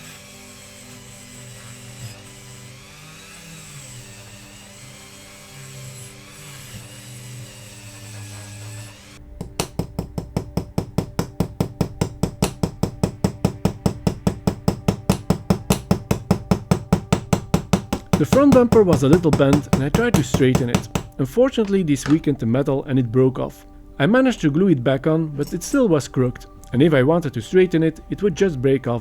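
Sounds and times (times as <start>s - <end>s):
electric wire brush running: 0.0s - 9.2s, 12.2s - 22.2s
hammer tapping on metal: 9.4s - 22.3s.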